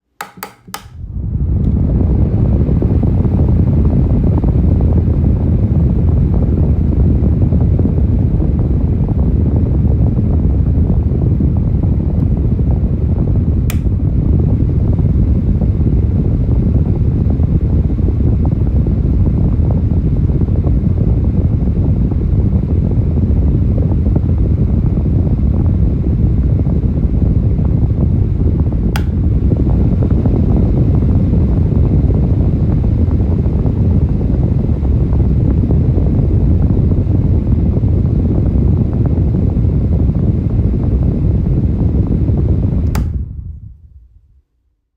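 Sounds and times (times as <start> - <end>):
fan air buffeting microphone: 0.0 - 44.1
brief clicks: 29.0 - 29.2.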